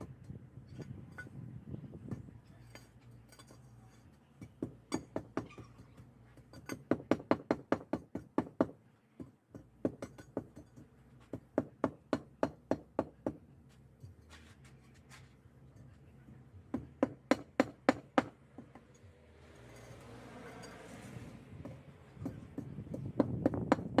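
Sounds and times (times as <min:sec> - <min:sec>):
hand tool knocking: 0:21.6 - 0:24.0.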